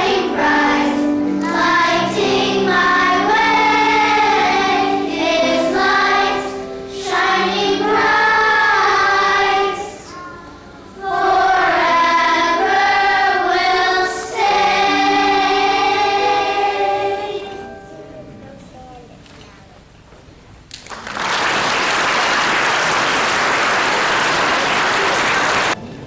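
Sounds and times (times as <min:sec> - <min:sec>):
children's choir singing: 0:00.0 - 0:18.0.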